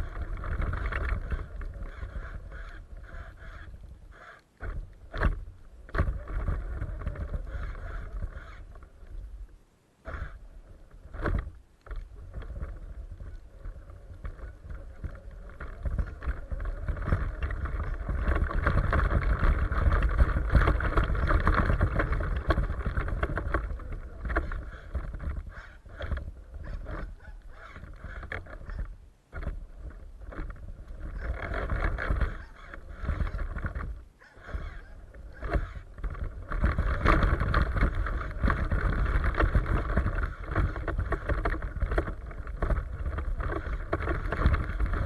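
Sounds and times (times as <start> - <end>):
toy truck motor running: 34.5 - 35.9.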